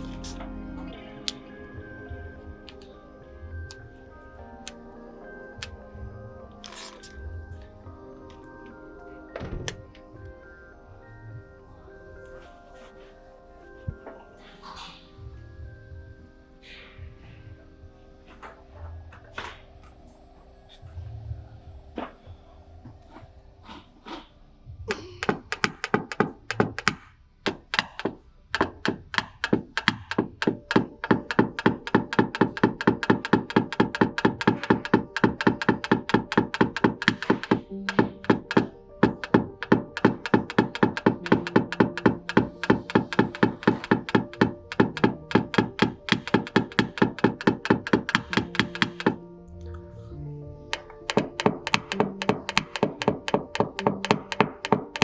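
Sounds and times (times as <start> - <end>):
hammer tapping on sheet metal: 25.2 - 49.2, 50.7 - 55.0.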